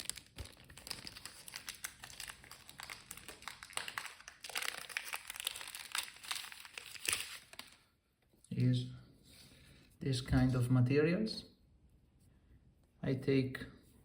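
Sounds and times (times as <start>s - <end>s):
plastic packet crinkling: 0.0s - 7.8s.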